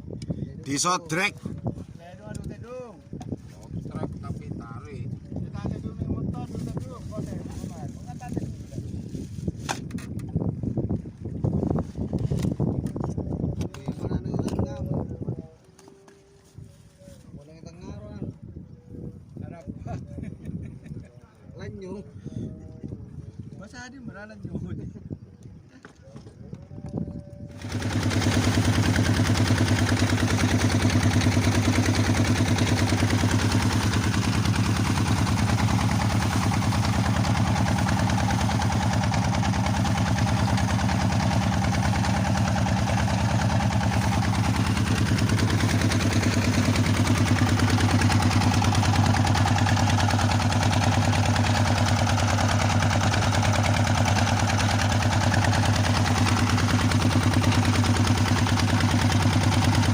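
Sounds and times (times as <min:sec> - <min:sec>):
boat engine droning: 0:26.2 - 0:59.9.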